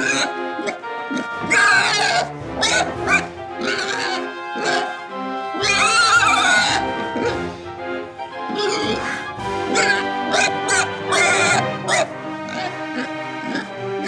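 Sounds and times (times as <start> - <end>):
loud animal cries: 0.0 - 0.3, 1.1 - 5.0, 5.6 - 7.0, 8.5 - 13.8
background music: 0.0 - 14.0.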